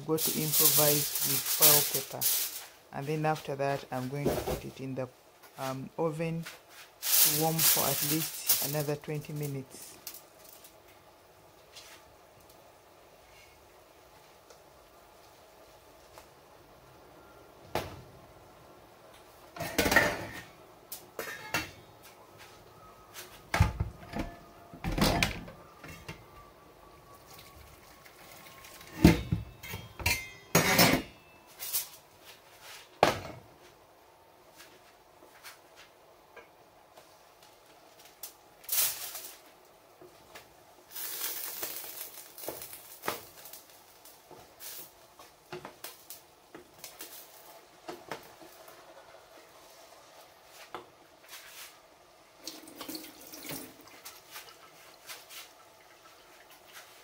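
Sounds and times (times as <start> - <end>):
pots and utensils clattering: 19.6 - 20.6, 21.2 - 21.9, 28.4 - 31.4.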